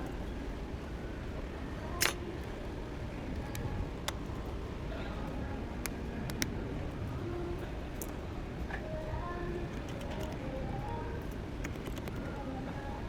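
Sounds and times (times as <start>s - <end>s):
sharp clicks: 2.0s - 2.2s.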